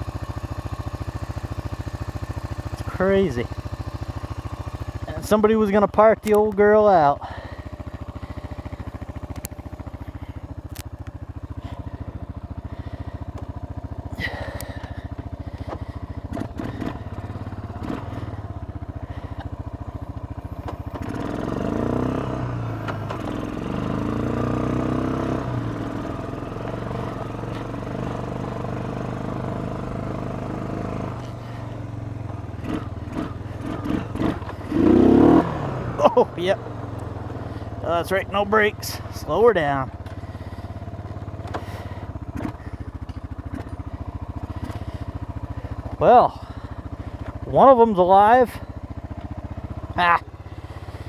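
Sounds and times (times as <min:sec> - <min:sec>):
atv engine idling and revving: 0:00.0 - 0:51.0.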